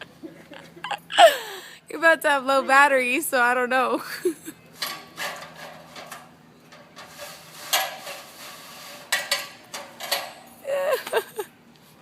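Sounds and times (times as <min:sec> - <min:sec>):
metallic clanks and knocks: 0:04.8 - 0:08.3, 0:09.0 - 0:10.5.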